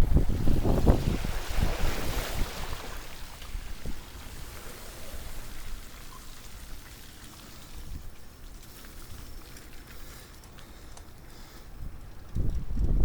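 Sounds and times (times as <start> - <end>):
wind rumble on microphone: 0.0 - 6.1, 11.4 - 13.0
wind and water noise: 0.0 - 13.0
faint ticks: 6.0 - 13.0.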